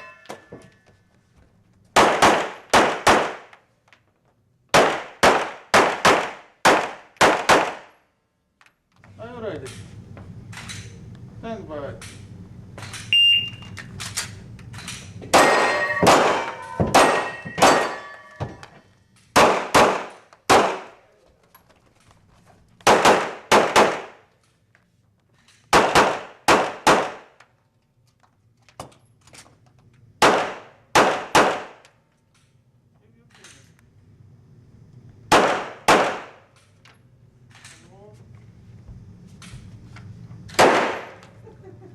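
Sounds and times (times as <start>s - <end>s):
shot timer beep: 13.1s - 13.7s
handgun shots with echo: 15.3s - 18.1s, 19.4s - 21.0s, 25.7s - 27.3s, 35.3s - 36.4s, 40.6s - 41.2s.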